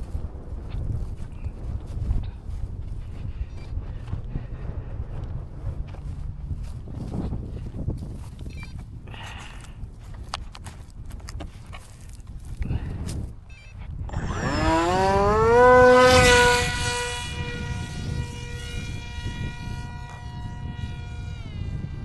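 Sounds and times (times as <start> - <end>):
electric motor whine: 14.0 - 22.0.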